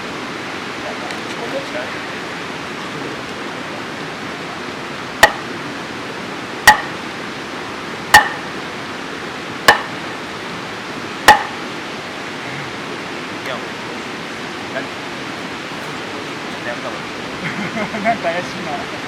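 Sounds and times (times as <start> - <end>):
sharp metallic strikes: 5.2 - 5.5, 6.7 - 7.0, 8.1 - 8.5, 9.7 - 10.0, 11.3 - 11.6.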